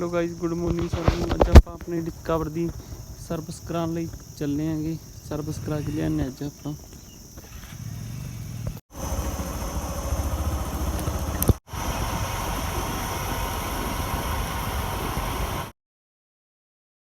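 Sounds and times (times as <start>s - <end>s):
motorcycle engine running: 7.7s - 15.7s.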